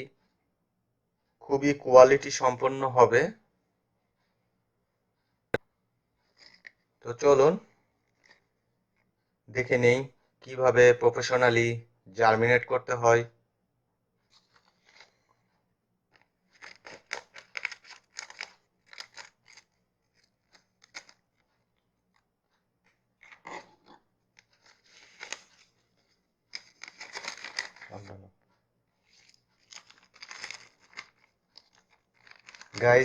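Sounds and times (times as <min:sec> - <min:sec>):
seed packet tearing and crinkling: 0:16.5 - 0:21.2, 0:26.6 - 0:27.9, 0:29.6 - 0:33.0.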